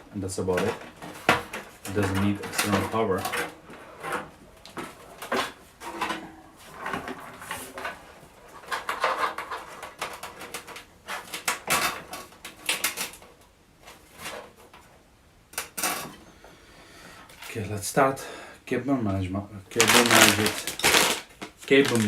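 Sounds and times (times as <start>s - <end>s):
plastic cable connectors clicking: 19.8s - 22.0s.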